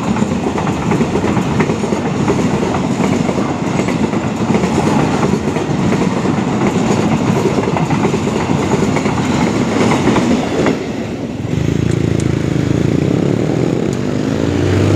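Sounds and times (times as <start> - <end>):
train wheels clattering over rail joints: 0.0 - 11.1
train engine drone: 0.0 - 14.9.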